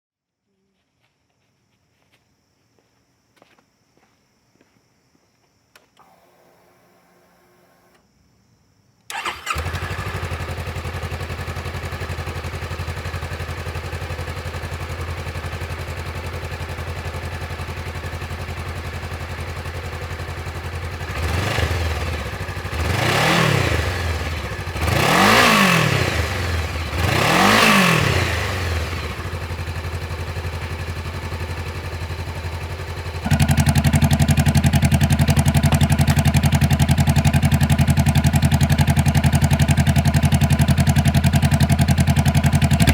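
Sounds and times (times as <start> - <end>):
motorcycle engine starting: 6.0 - 8.0, 9.1 - 42.9
motorcycle engine idling: 9.1 - 42.9
motorcycle engine revving: 9.1 - 42.9.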